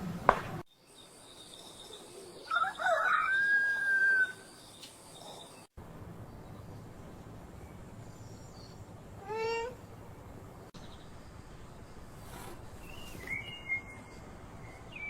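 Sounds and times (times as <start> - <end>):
animal meow-like cry: 9.2 - 9.8.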